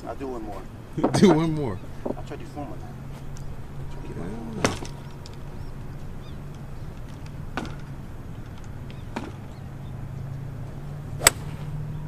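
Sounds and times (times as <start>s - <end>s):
low steady hum: 0.0s - 12.0s
golf club striking ball: 11.1s - 11.9s.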